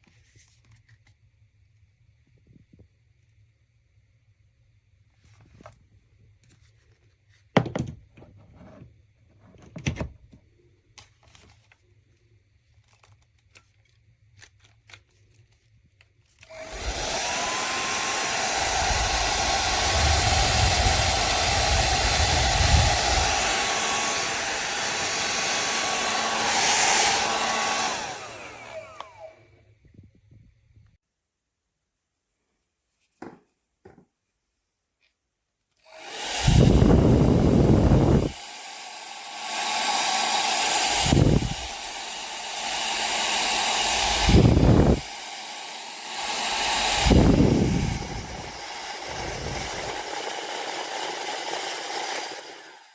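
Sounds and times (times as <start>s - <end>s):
hair dryer blowing: 16.4s - 29.4s, 35.9s - 52.9s.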